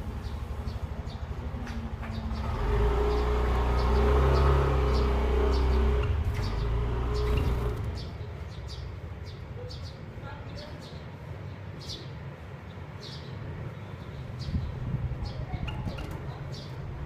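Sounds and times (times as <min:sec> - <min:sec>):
vehicle passing by: 0:00.0 - 0:08.7.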